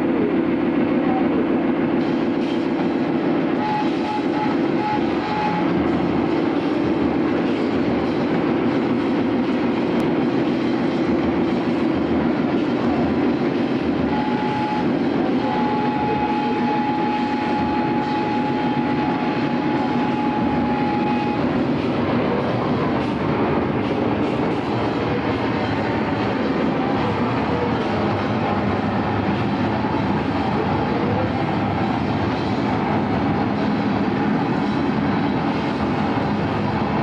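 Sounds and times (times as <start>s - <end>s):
vehicle rumbling and clattering: 0.0s - 37.0s.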